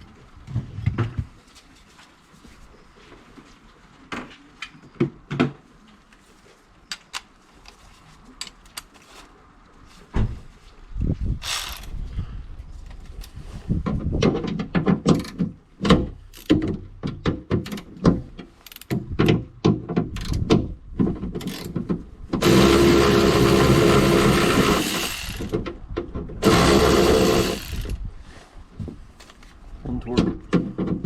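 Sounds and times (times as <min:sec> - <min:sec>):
ratchet wrench clicking: 0:11.4 - 0:11.9.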